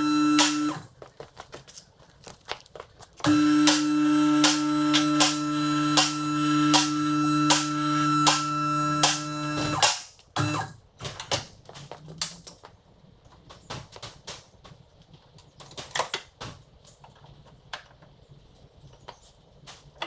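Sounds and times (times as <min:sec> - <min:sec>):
parts clicking and knocking: 0:00.0 - 0:01.8, 0:02.5 - 0:12.7.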